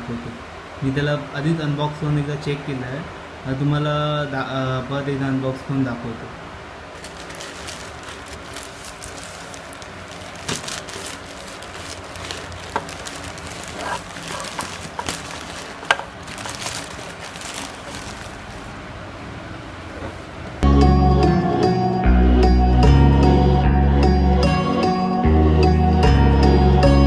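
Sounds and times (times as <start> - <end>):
packaging rustling: 6.9 - 18.9.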